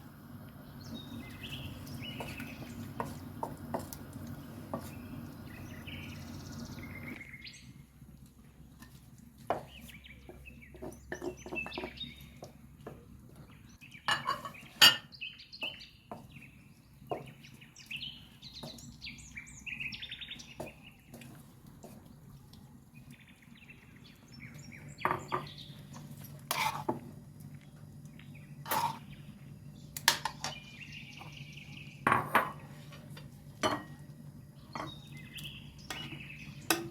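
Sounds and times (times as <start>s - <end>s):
dishes and utensils clinking: 14.1s - 15.1s, 33.6s - 34.0s.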